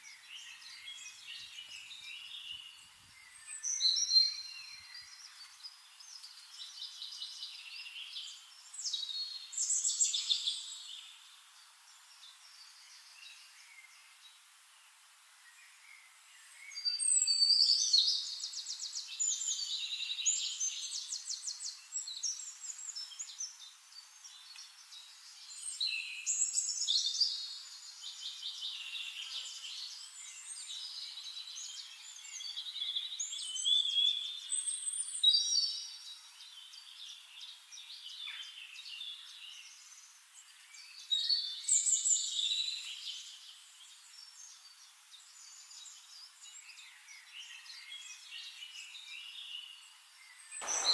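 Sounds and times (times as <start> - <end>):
birds trilling and chirping: 50.6 - 50.9.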